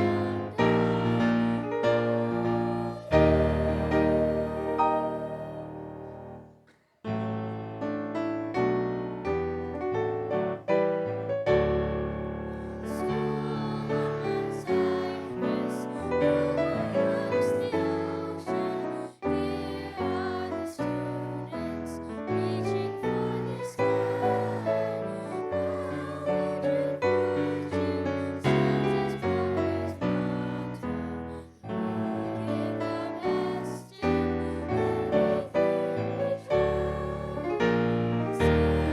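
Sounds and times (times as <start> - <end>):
piano music: 0.0 - 6.5, 7.1 - 21.2, 23.9 - 38.9.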